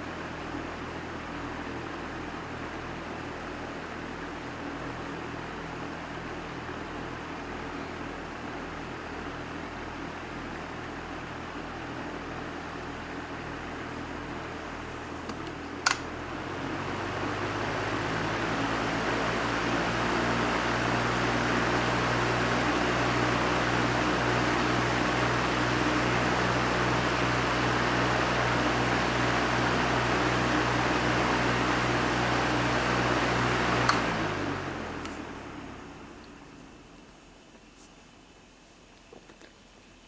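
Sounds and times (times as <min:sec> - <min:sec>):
electric fan running: 0:00.0 - 0:37.9.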